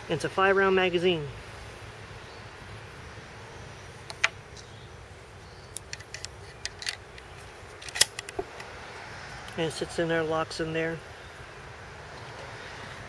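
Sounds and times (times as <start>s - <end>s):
rifle magazine metal clicks: 5.8s - 8.4s.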